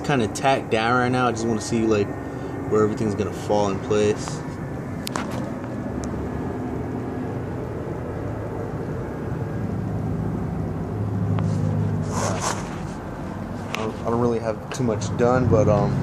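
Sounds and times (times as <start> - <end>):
low mechanical hum: 0.0 - 16.0
short rustling: 11.4 - 14.1.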